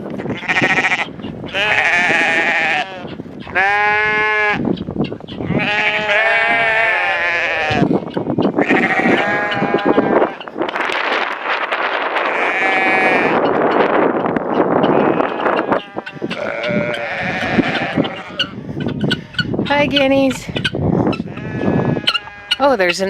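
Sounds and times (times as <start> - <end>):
goats or sheep bleating: 0.1 - 4.7, 5.4 - 10.6, 12.1 - 13.6, 14.8 - 19.4, 21.2 - 22.6.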